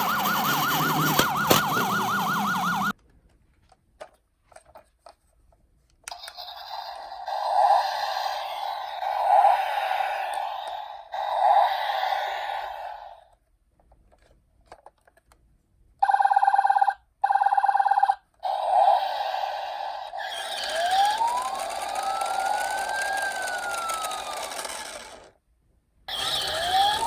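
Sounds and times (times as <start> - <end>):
wailing electronic siren: 0.0 - 2.9, 20.4 - 25.1, 26.1 - 27.0.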